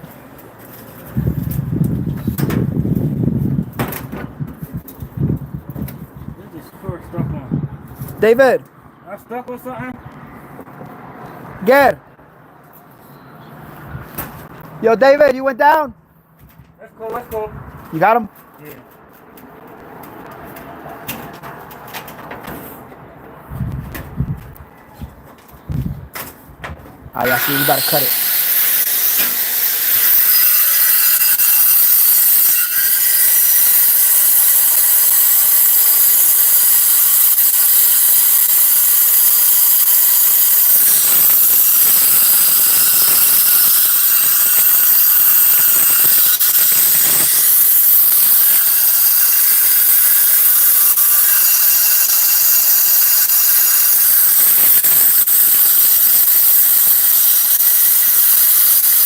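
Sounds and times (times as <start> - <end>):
angle grinder cutting: 27.2 - 59.0.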